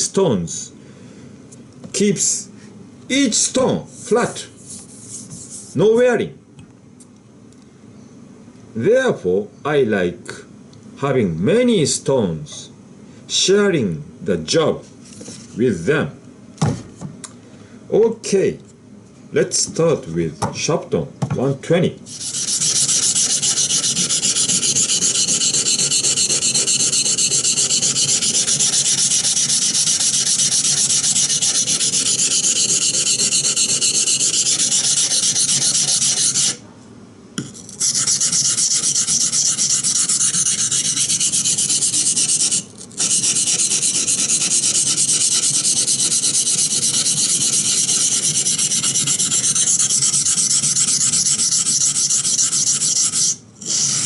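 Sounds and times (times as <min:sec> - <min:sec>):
knife blade scraping on whetstone: 0:22.1 - 0:36.6, 0:37.4 - 0:54.0.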